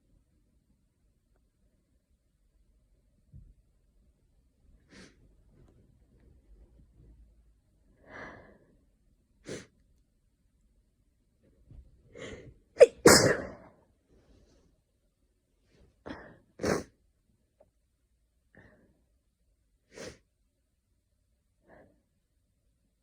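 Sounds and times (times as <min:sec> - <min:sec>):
person sneezing: 0:12.2 - 0:13.7, 0:16.1 - 0:16.9.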